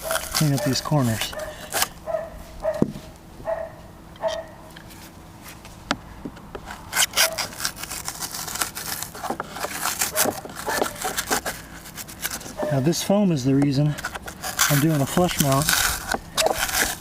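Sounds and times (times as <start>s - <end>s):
hand tool scraping foam: 0.0s - 2.0s, 6.6s - 17.0s.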